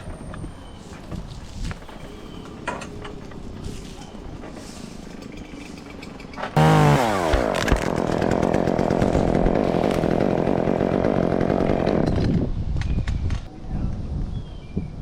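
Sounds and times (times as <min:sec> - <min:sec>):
chainsaw cutting wood: 0:06.6 - 0:12.5.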